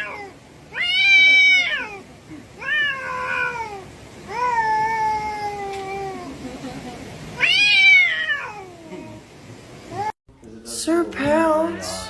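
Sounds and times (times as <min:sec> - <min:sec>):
cat meowing: 0:00.0 - 0:02.0, 0:02.6 - 0:06.3, 0:07.4 - 0:08.9.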